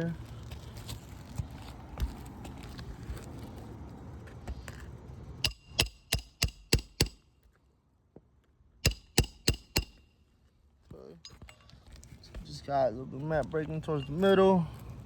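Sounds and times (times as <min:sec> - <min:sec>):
hammer striking metal: 0:05.4 - 0:07.2, 0:08.8 - 0:10.1.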